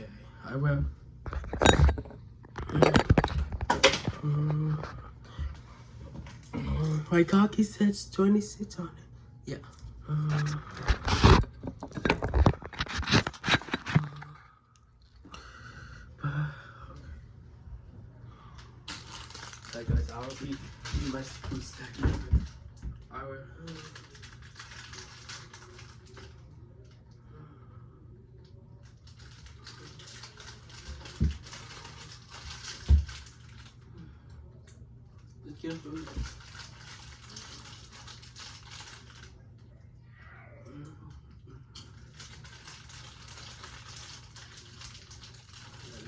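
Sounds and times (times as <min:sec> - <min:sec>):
objects knocking and scraping: 0:01.3 - 0:04.2, 0:10.3 - 0:14.4.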